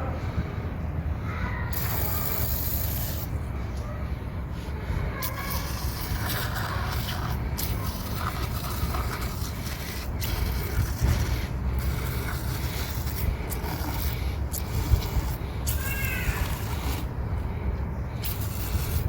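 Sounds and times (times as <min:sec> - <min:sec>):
scraping and rubbing: 0:05.2 - 0:17.1, 0:18.2 - 0:19.0.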